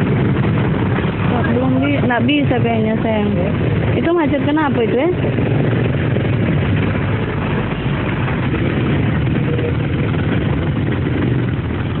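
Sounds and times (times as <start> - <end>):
vehicle engines idling: 0.0 - 12.0.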